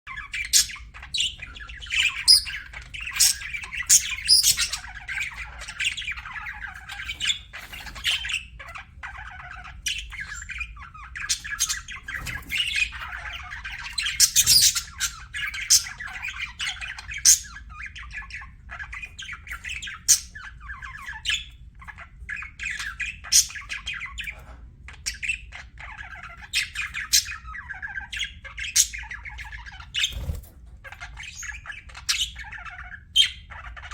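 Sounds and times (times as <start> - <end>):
high bird chirps and squawks: 0.1 - 33.9
budgerigar chattering: 0.2 - 21.5.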